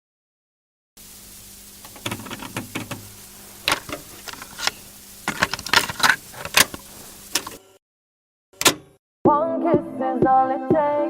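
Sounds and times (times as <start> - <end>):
faint steady hum: 1.0 - 7.7
sharp clicks and knocks: 1.8 - 3.1, 3.7 - 7.6.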